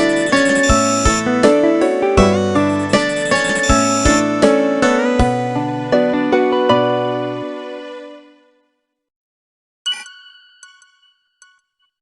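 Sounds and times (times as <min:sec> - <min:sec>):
synthesized ringtone melody: 0:00.0 - 0:01.5, 0:02.4 - 0:04.4.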